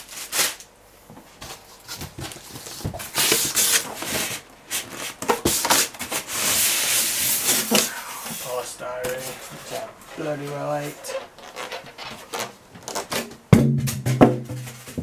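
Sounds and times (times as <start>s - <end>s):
polystyrene scraping on cardboard: 0.0s - 0.6s, 1.4s - 13.3s.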